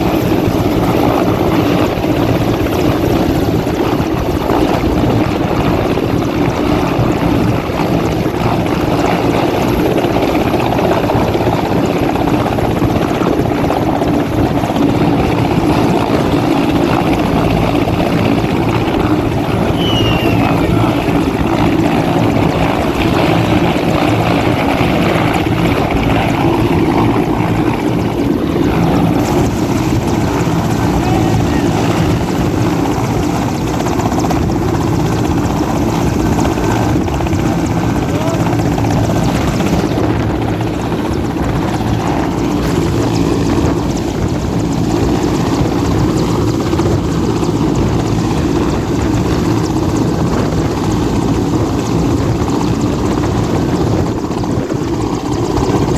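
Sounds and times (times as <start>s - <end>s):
helicopter rotor and engine: 0.0s - 55.9s
high falling whistle: 19.7s - 20.8s.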